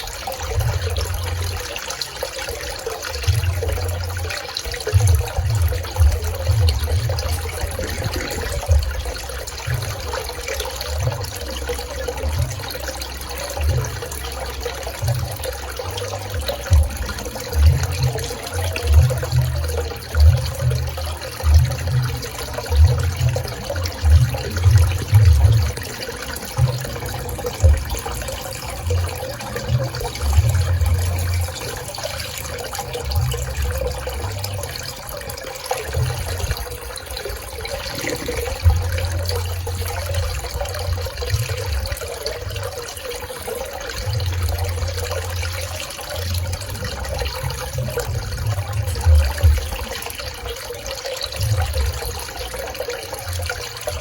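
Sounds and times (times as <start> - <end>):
pool water flowing and splashing: 0.0 - 54.0
uneven low rumble: 5.0 - 14.5, 15.1 - 34.9, 35.9 - 42.8.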